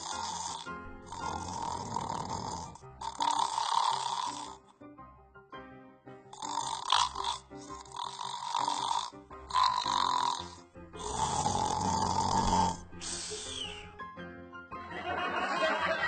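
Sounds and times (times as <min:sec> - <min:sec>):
person snoring: 0:00.0 - 0:04.8, 0:06.3 - 0:13.9.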